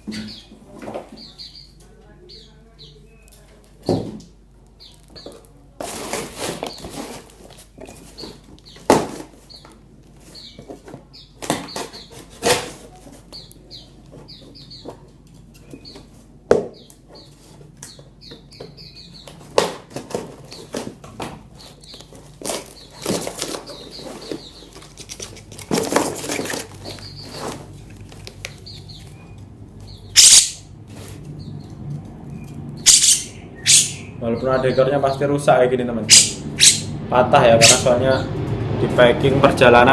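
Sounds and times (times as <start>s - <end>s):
rustling: 5.7s - 8.4s, 21.6s - 29.3s
faint short bird chirps: 32.9s - 34.1s.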